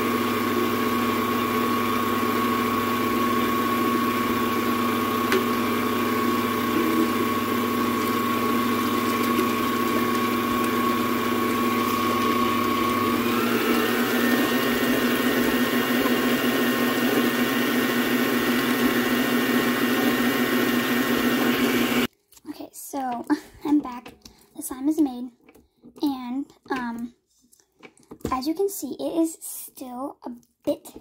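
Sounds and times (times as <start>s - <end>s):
electric mixer motor humming: 0.0s - 22.1s.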